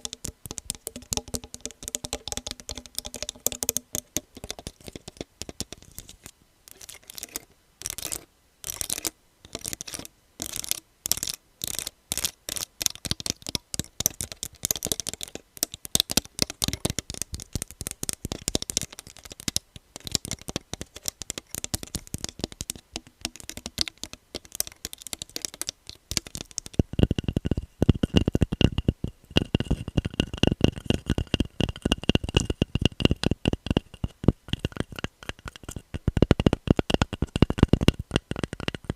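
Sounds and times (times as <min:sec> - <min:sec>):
fingernails tapping and scratching: 0:00.0 - 0:38.9.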